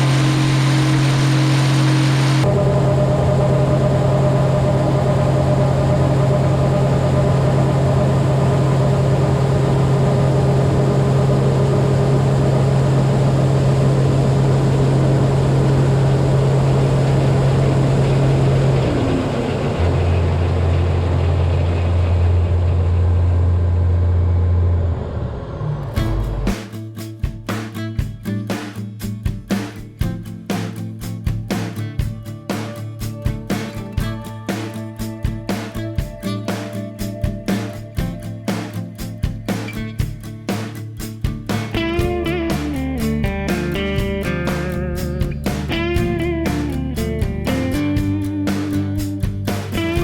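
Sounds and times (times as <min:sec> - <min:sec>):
heavy machinery engine humming: 0:00.0 - 0:26.5
music: 0:25.9 - 0:50.0.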